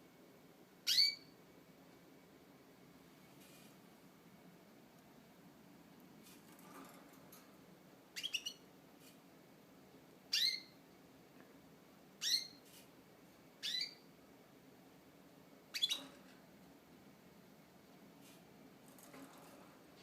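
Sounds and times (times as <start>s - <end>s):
canary chirping: 0.8s - 1.4s, 8.1s - 8.7s, 10.3s - 10.8s, 12.2s - 12.6s, 13.6s - 14.1s, 15.7s - 16.4s.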